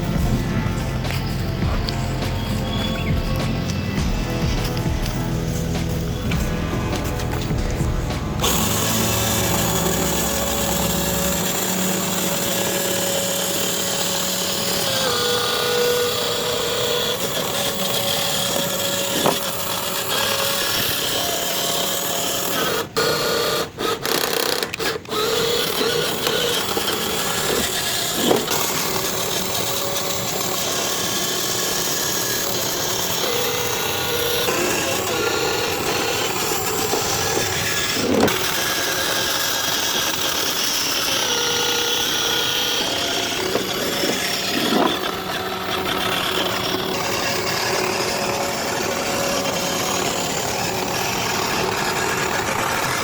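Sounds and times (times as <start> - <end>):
small electric motor whining: 0.0 - 53.0.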